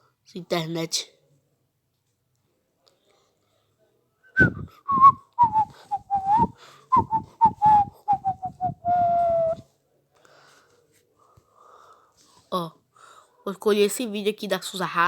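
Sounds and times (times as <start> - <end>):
person whistling a tune: 4.4 - 9.6.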